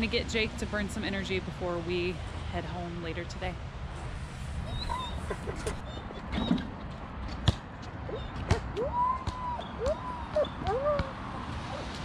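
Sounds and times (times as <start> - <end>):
short squeaky calls: 4.6 - 6.8
ball bouncing on hard court: 7.4 - 11.2.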